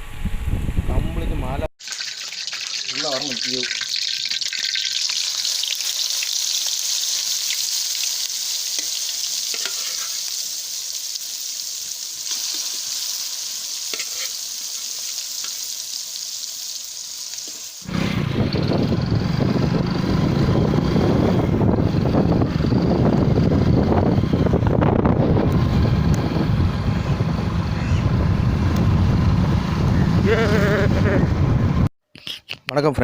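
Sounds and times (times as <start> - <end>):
wind rumble on microphone: 0.0 - 1.7, 17.9 - 31.9
fish frying in hot oil: 1.8 - 17.9.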